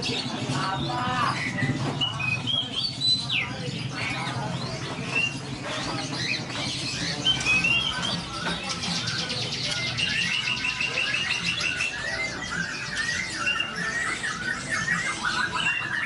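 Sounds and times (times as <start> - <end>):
songbirds chirping and calling: 0.0 - 16.0.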